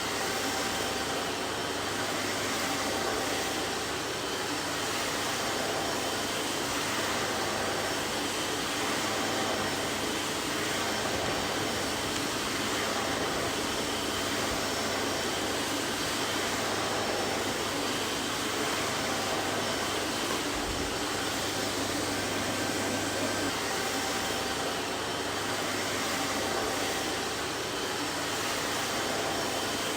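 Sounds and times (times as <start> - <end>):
vacuum cleaner running: 0.0 - 29.9.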